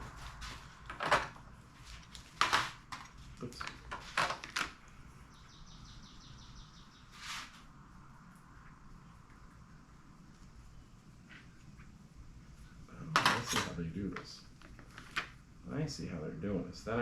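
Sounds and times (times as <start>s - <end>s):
parts scraping and clattering: 0.0s - 4.8s, 13.1s - 13.9s.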